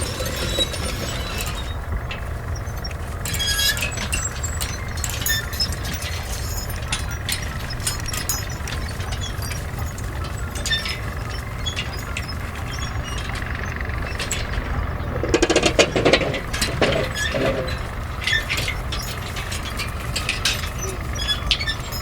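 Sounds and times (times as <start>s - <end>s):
machinery rumbling: 0.0s - 22.0s
metallic clinks and knocks: 0.0s - 22.0s.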